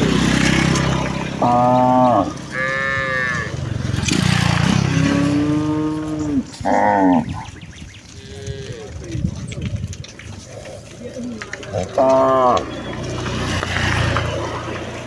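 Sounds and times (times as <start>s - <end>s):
cattle mooing: 0.0s - 9.2s, 11.6s - 13.2s.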